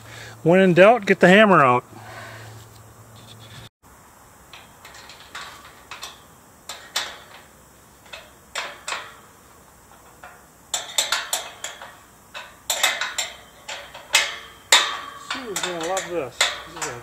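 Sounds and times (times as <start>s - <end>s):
hammer striking metal: 10.8s - 17.0s.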